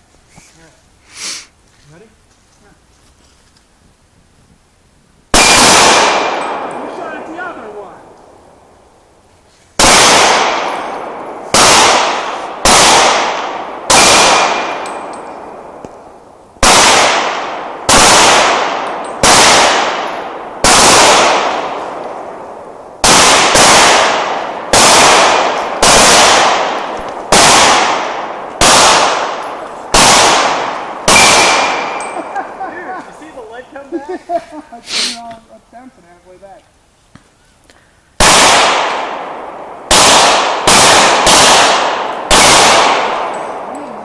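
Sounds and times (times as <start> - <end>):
pistol shots echoing: 5.3 - 8.4, 9.8 - 32.6, 38.2 - 43.7.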